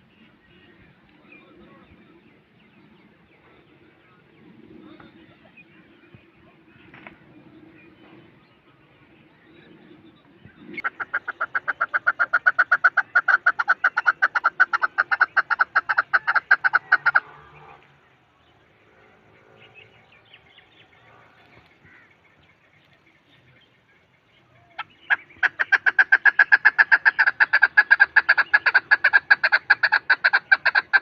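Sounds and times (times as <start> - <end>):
partridge clucking call: 10.8 - 17.4, 24.7 - 31.0.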